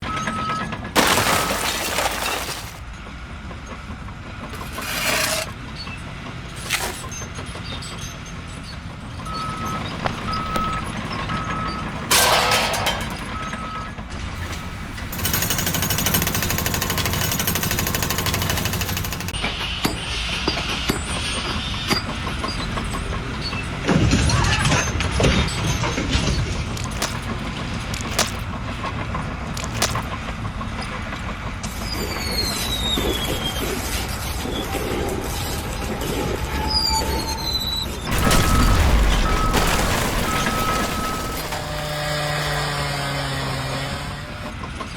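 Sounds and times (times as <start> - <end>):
heavy construction machinery: 0.0 - 44.9
reversing beeper: 9.2 - 14.0, 35.6 - 42.1.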